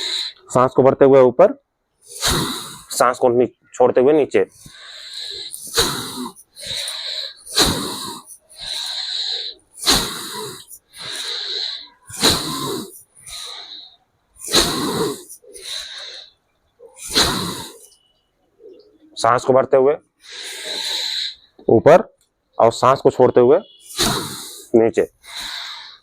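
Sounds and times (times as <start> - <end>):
man breathing forcefully through nose: 0.0 - 0.5, 2.0 - 3.0, 4.5 - 18.0, 20.2 - 21.5, 23.9 - 26.0.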